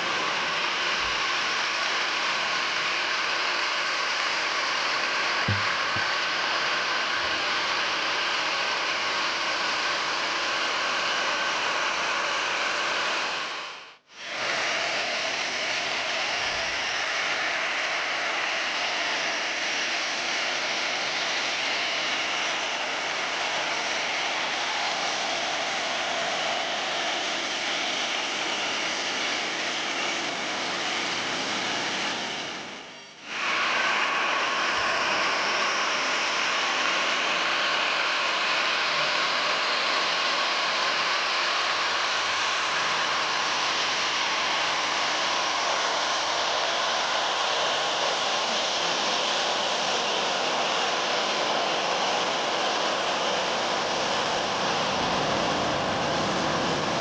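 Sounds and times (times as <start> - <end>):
jet engines whining: 0.0 - 57.0.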